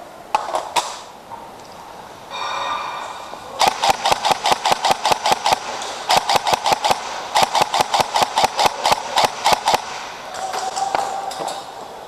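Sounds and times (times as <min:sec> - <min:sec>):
whirring hum: 0:00.0 - 0:12.0
airsoft rifle shots: 0:03.6 - 0:10.5.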